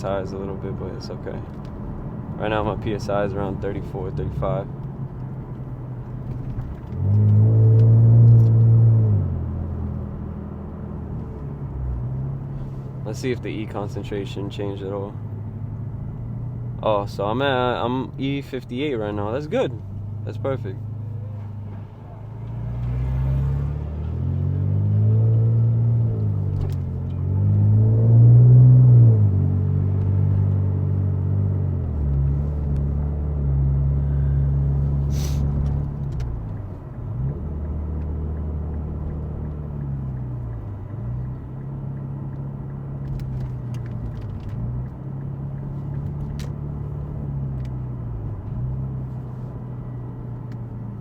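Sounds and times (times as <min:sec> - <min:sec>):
car engine from inside cabin: 0:00.0 - 0:51.0.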